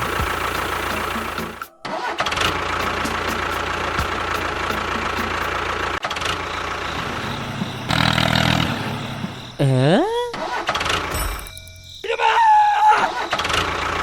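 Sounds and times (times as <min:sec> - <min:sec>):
small engine running: 0:00.0 - 0:01.6, 0:02.2 - 0:09.6, 0:13.4 - 0:14.0.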